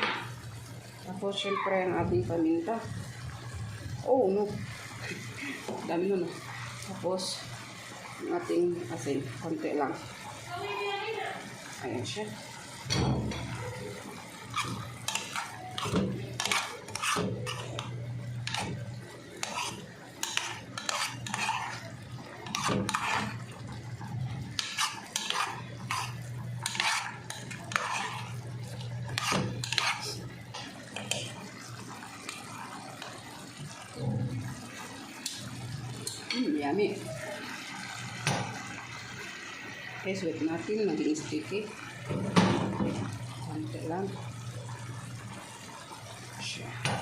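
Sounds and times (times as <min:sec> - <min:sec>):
utensil scraping cooking pan: 0:04.2 - 0:10.0, 0:12.8 - 0:34.8.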